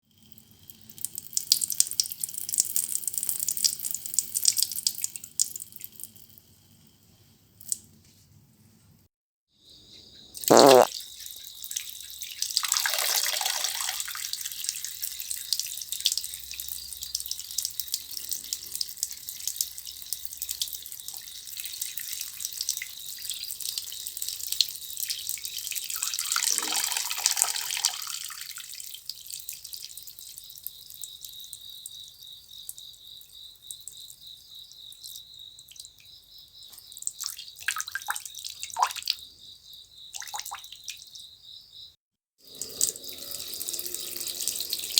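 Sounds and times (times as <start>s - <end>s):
insects chirring: 10.1s - 13.9s
person urinating: 10.4s - 11.0s, 12.5s - 14.7s, 25.8s - 28.8s, 42.5s - 44.9s.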